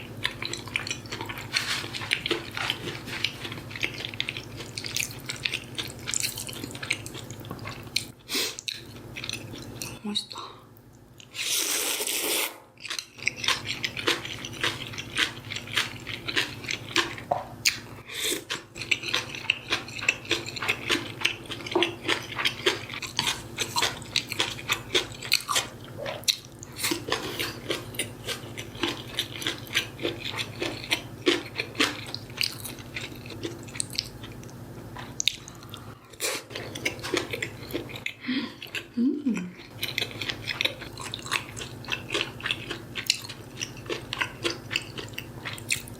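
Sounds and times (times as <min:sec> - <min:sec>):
mouth chewing and crunching: 0:00.0 - 0:45.9.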